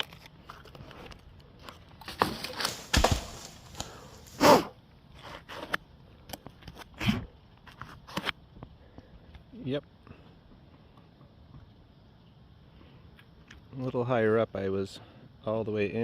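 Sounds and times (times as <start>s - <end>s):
scraping and rustling on tree trunk: 0.0s - 5.9s, 6.5s - 8.4s.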